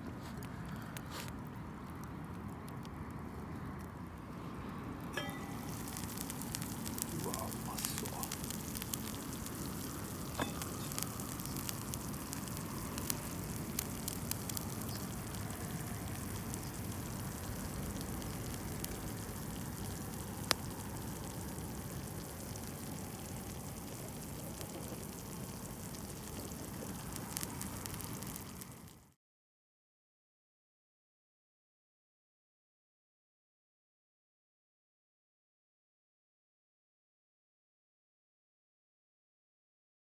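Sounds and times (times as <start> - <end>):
fire crackling and popping: 0.1 - 29.0
campfire hissing: 4.2 - 29.0.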